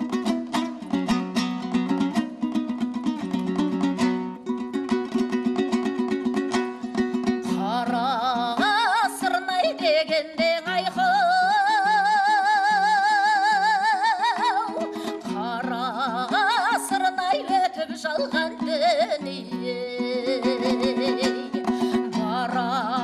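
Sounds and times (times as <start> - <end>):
plucked strings: 0.0 - 23.0
person singing with vibrato: 7.4 - 23.0.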